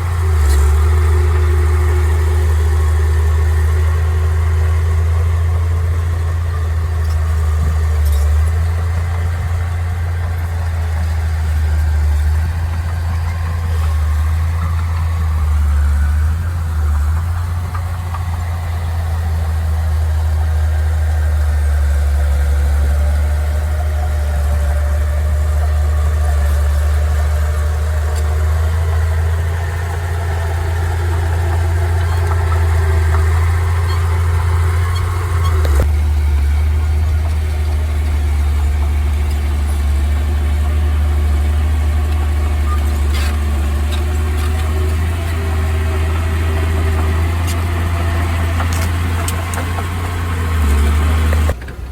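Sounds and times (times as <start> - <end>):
diesel engine running: 0.0 - 51.9.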